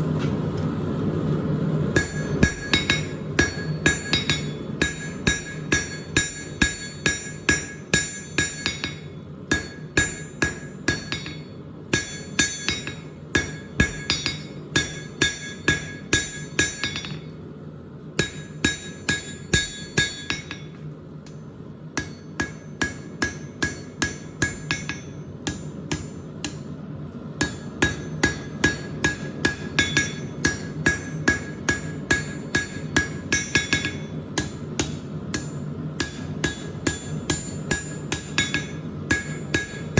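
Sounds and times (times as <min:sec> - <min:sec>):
hammer ringing on anvil: 0:02.0 - 0:17.3, 0:18.2 - 0:20.8, 0:22.0 - 0:26.8, 0:27.4 - 0:39.9.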